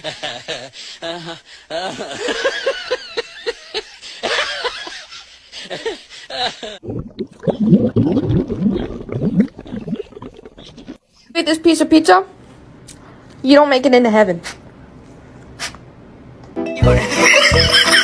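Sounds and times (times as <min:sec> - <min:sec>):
people laughing: 0:00.0 - 0:06.8, 0:16.8 - 0:18.0.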